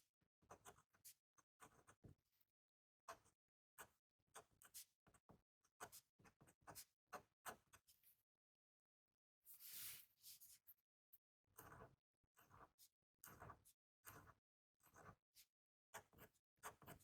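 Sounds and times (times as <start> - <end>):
pen nib scratching on paper: 11.6 - 15.1.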